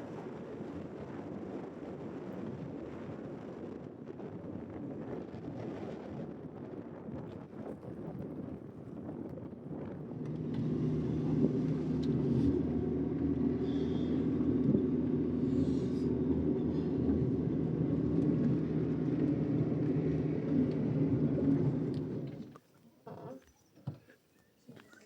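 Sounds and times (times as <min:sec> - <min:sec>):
vehicle engine running: 0:10.0 - 0:22.5.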